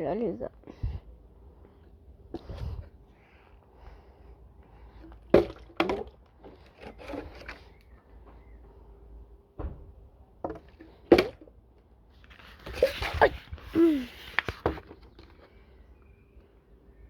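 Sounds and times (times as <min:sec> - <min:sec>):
plastic bottle knocking on hard surface: 0:05.3 - 0:06.1.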